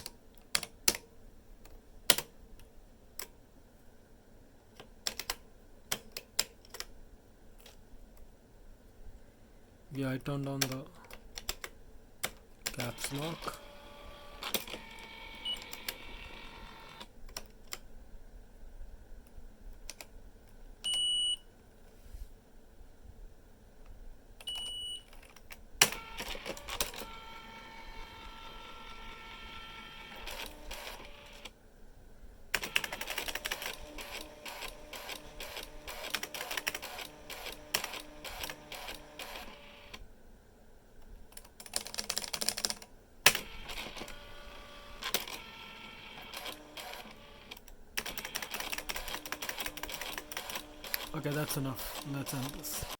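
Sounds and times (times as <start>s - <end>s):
print mechanism motor tone: 12.7s - 17.0s, 25.9s - 31.5s, 32.6s - 40.0s, 43.3s - 52.9s
rapid mechanical clicking: 32.6s - 39.6s, 46.2s - 52.9s.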